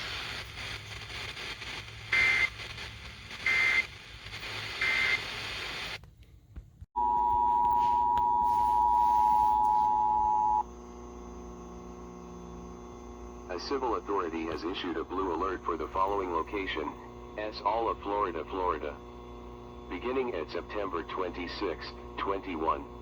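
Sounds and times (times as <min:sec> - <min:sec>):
radio hiss: 0:00.0 - 0:06.0, 0:07.5 - 0:10.6, 0:12.1 - 0:23.0
high data bursts: 0:00.6 - 0:05.3
two-tone attention signal: 0:07.0 - 0:10.6
low hum: 0:07.0 - 0:23.0.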